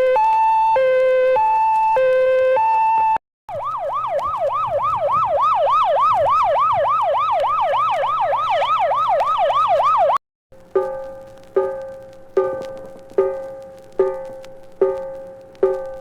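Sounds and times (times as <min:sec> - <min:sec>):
electronic yelp siren: 0:00.0 - 0:10.2
two-tone siren: 0:00.0 - 0:10.2.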